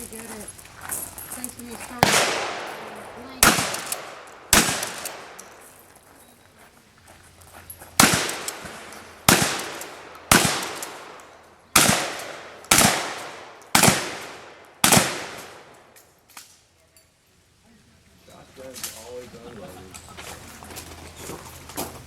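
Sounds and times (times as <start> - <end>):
echoing gunshots: 2.0 - 5.7, 8.0 - 16.0.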